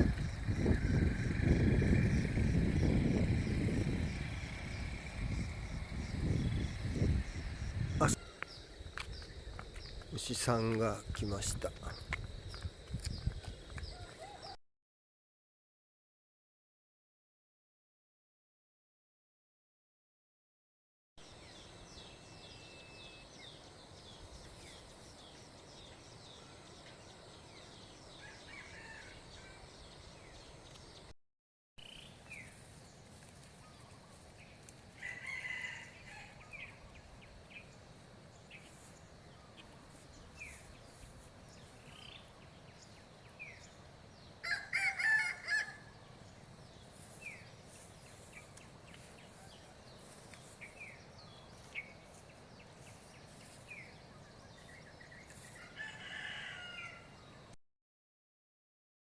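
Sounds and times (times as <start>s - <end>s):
small birds chirping: 0.2s - 14.4s, 45.8s - 56.2s
faint outdoor hiss: 1.9s - 14.4s, 21.3s - 31.0s, 31.8s - 57.6s.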